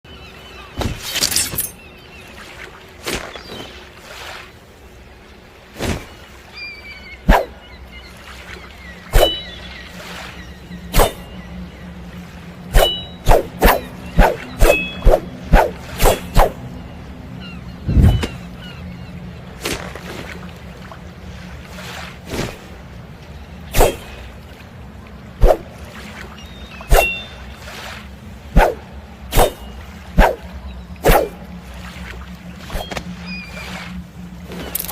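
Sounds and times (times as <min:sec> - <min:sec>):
low steady hum: 0:00.1 - 0:34.9
folding sword swishes: 0:11.0 - 0:11.2, 0:12.8 - 0:16.6, 0:23.8 - 0:24.1, 0:26.9 - 0:27.2, 0:28.6 - 0:29.6.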